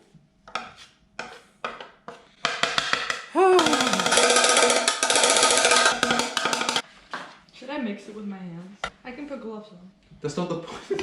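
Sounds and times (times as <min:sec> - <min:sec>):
drum hits: 0:03.4 - 0:06.8
snare drum roll: 0:03.6 - 0:06.8.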